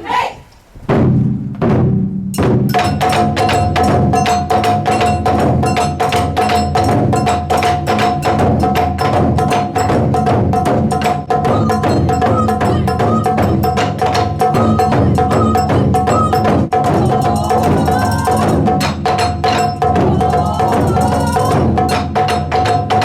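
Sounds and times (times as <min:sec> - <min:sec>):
taiko drums playing fast: 0:00.8 - 0:23.0
held high tone: 0:20.0 - 0:21.6.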